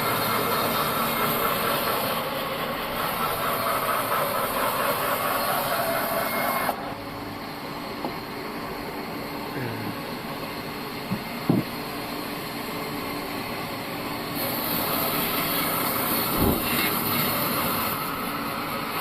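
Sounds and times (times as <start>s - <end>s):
band saw sawing log: 0.0s - 6.8s, 14.4s - 19.0s.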